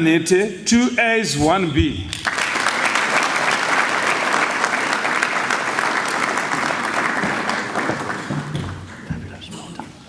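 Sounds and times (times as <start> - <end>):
audience applauding: 2.1 - 9.6.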